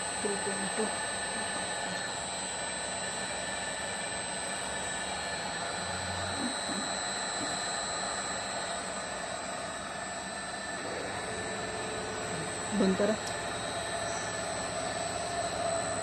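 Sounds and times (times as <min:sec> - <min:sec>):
high-pitched whines: 0:00.0 - 0:16.0
pump drive whirring: 0:00.0 - 0:16.0.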